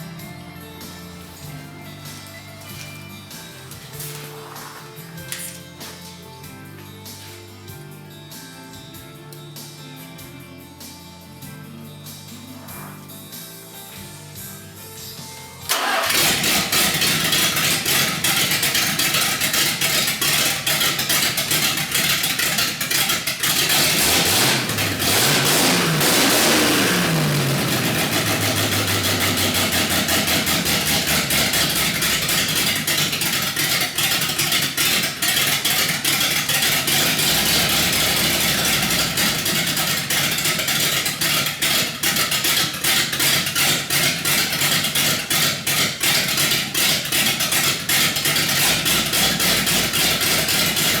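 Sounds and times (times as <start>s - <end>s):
engine revving and rough idle: 15.7s - 51.0s.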